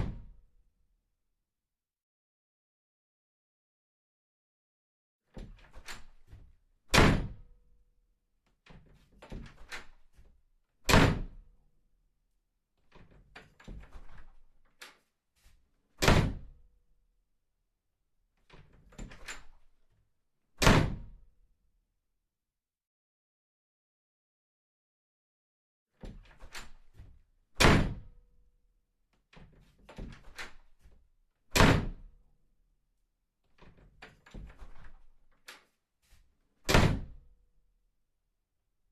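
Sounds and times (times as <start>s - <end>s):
door shutting with a thud: 10.9s - 11.4s, 16.0s - 16.5s, 26.0s - 28.1s, 31.5s - 32.1s, 36.7s - 37.2s
door latch clicks and rattles: 18.9s - 19.6s
door banging shut: 36.7s - 37.1s.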